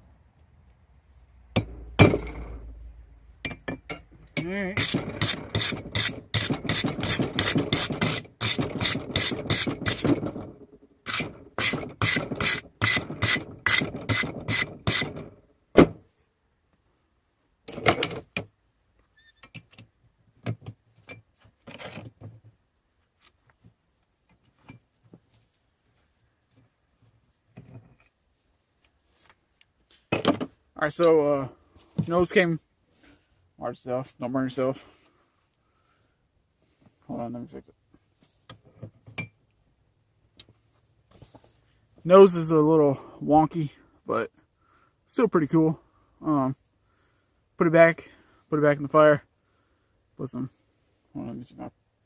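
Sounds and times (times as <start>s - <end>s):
tools clinking: 1.6s - 2.7s, 3.4s - 16.0s, 17.7s - 19.9s
hammer striking steel chisel: 3.5s - 10.1s.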